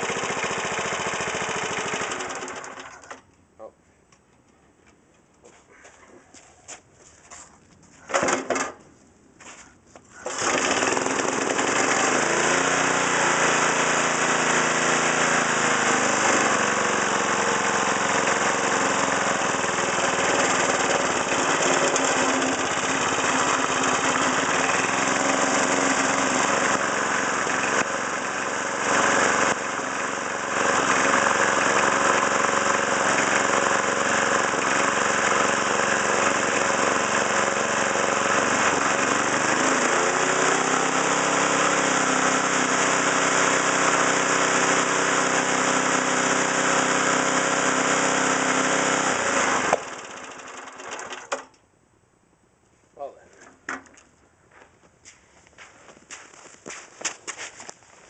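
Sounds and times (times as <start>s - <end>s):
lawn mower engine starting: 0.0s - 3.3s, 8.1s - 8.8s, 10.1s - 51.6s.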